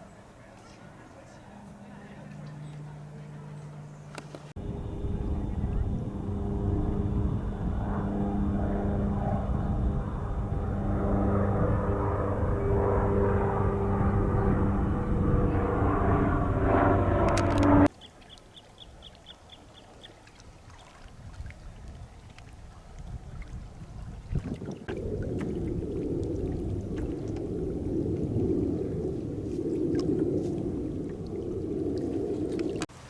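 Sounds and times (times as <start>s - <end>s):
engine drone: 1.2s - 17.9s, 24.9s - 32.9s
low rushing water: 17.2s - 33.0s.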